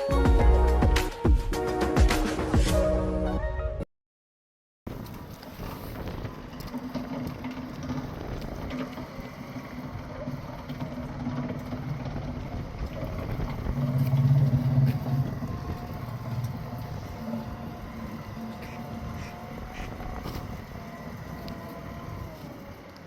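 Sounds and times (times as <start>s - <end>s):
engine humming: 4.9s - 23.0s.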